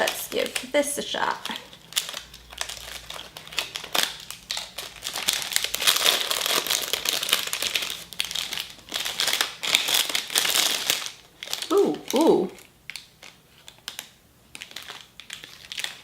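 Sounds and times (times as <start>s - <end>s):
plastic wrapper crinkling: 0.0s - 16.0s.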